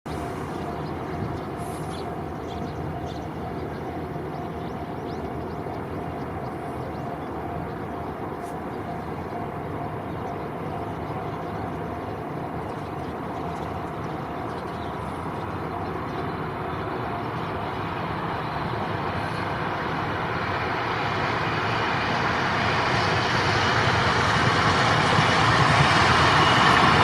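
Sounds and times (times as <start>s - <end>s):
freight train wheels rumbling: 0.0s - 27.0s.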